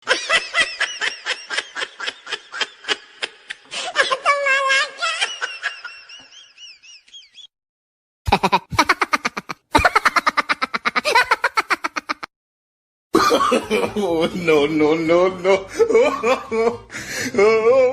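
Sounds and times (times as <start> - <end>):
rapid laughter: 8.3 - 12.3.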